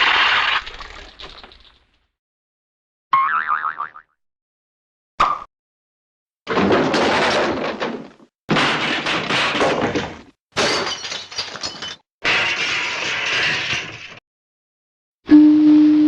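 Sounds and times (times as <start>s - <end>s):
glass shattering crashes: 6.5s - 14.2s.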